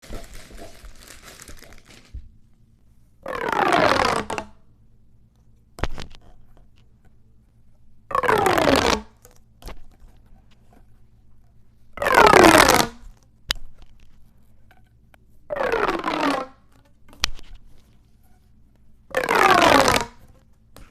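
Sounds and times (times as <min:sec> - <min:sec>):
plastic tube ratcheting zip: 0:03.2 - 0:04.6, 0:08.1 - 0:10.0, 0:12.0 - 0:13.9, 0:15.5 - 0:17.6, 0:19.1 - 0:20.5.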